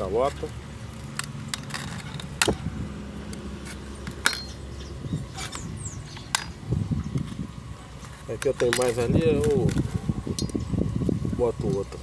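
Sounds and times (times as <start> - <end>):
low steady hum: 0.0 - 12.0
hubcap clicking and clattering: 3.3 - 10.7.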